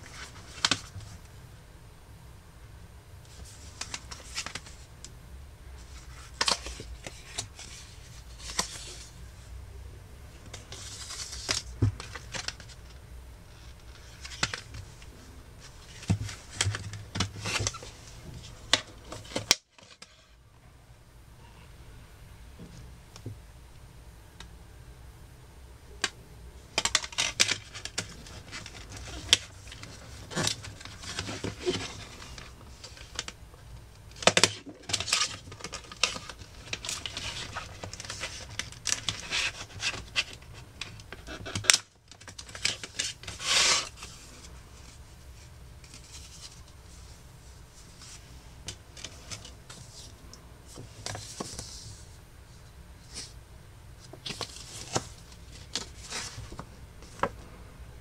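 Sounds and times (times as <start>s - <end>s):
packaging rustling and clicking: 26.8s - 33.4s, 34.1s - 44.2s.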